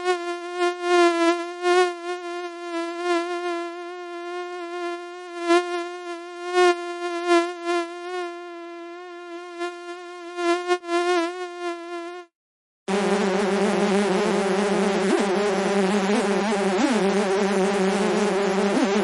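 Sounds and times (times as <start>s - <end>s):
mosquito buzzing: 0.0s - 19.0s
dense buzzing: 12.9s - 19.0s.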